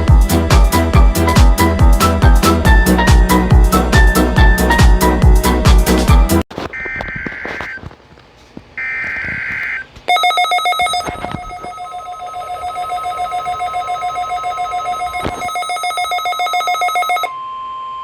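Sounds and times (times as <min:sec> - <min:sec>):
digital header tones: 0:08.8 - 0:17.3
rapidly pulsing alarm beep: 0:08.8 - 0:17.3
steady warning tone: 0:08.8 - 0:17.4.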